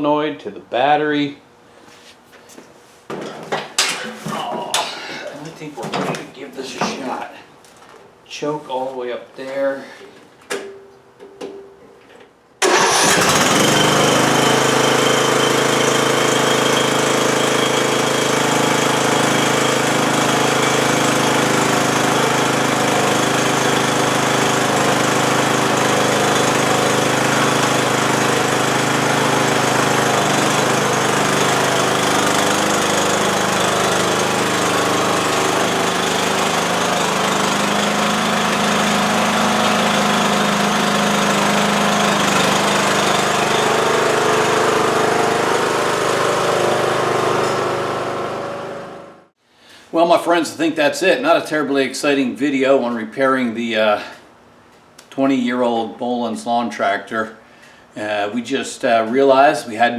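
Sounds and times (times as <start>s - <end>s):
lawn tractor engine running: 12.6s - 49.3s.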